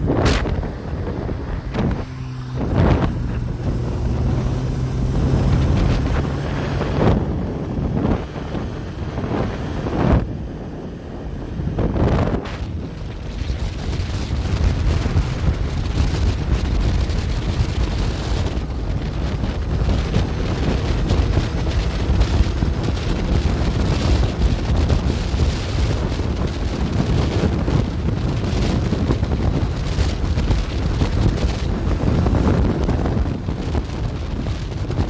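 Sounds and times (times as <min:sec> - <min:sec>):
wind buffeting microphone: 0:00.0 - 0:35.0.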